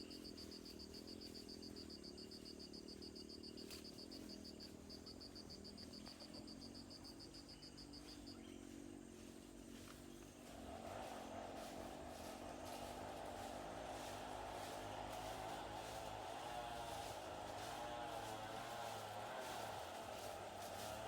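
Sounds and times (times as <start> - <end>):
faint high insect chirping: 0.0 - 10.6.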